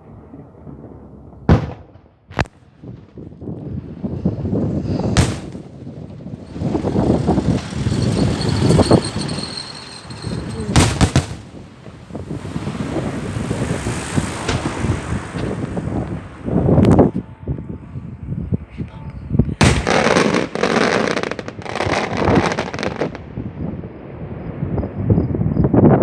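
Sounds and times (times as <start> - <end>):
fireworks bangs: 0.0 - 17.8, 19.6 - 24.8
fireworks crackling and booming: 0.0 - 17.8, 19.5 - 26.0
thin high whistles: 6.5 - 11.2.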